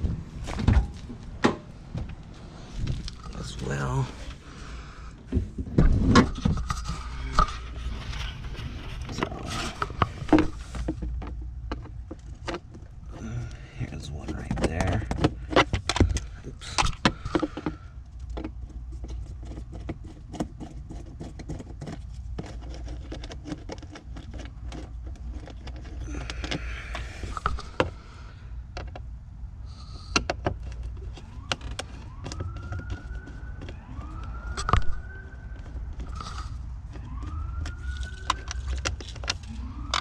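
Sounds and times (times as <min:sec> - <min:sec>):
rising siren-like tone: 0:31.1 - 0:40.0.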